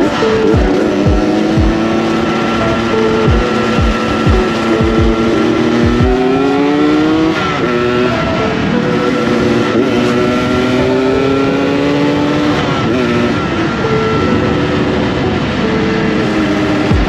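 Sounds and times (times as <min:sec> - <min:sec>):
motorcycle engine growling: 0:00.6 - 0:08.4.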